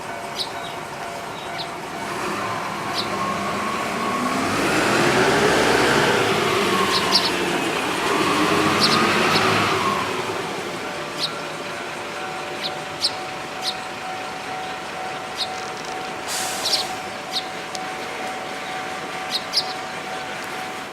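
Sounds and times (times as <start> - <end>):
sparrows chirping: 0.3 - 4.1, 6.5 - 20.8
vehicle passing: 2.0 - 11.4.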